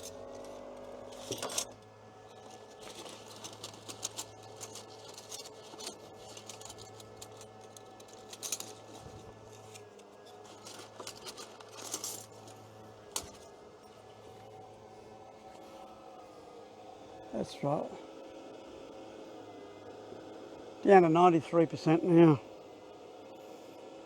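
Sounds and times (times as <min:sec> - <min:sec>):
coffee machine electrical hum: 0:00.0 - 0:24.0
light clicks and clinks: 0:01.1 - 0:14.0.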